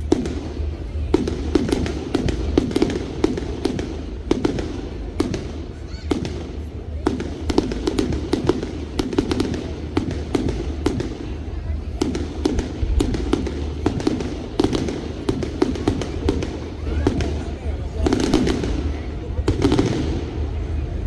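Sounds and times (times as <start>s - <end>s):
fireworks bangs and crackles: 0.0s - 21.0s
steady low rumble: 6.6s - 21.0s.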